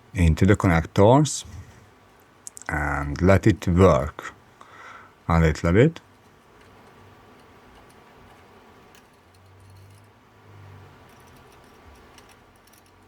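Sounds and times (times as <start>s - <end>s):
faint low hum: 0.0s - 13.0s
light clicks of small parts: 11.0s - 13.0s.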